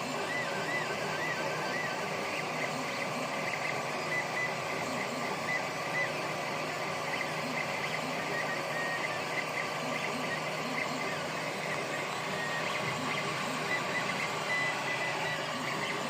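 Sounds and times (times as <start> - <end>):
printer fan hiss and hum: 0.0 - 16.0
stepper motors whining: 0.0 - 16.0.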